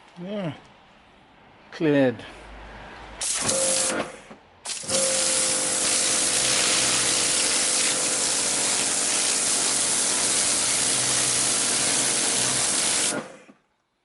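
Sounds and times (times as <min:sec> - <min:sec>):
pressure washer jet spraying: 0:03.2 - 0:04.0, 0:04.7 - 0:13.3
pump running: 0:04.7 - 0:13.3.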